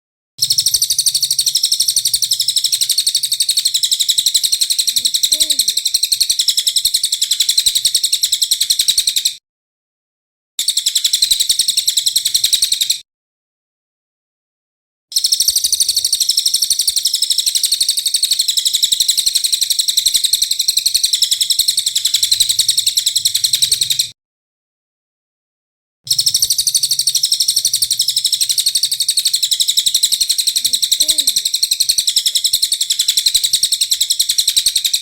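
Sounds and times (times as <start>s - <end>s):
songbird harsh chattering call: 0.4s - 9.4s, 15.2s - 24.1s, 26.1s - 35.0s.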